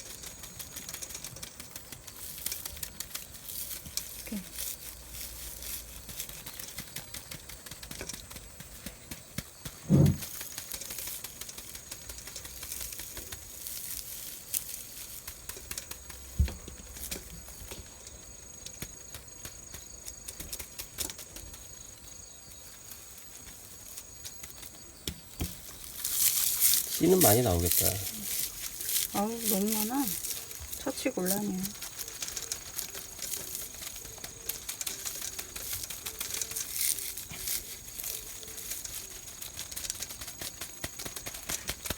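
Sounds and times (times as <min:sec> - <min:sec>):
dry gourd crackling and rustling: 0:00.0 - 0:41.9
seeds rattling: 0:00.0 - 0:41.9
dull thumps: 0:09.8 - 0:10.2.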